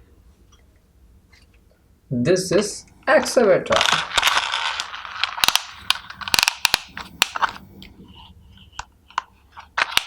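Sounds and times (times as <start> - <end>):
plastic toy clicking and clattering: 3.2 - 7.6, 9.1 - 10.0.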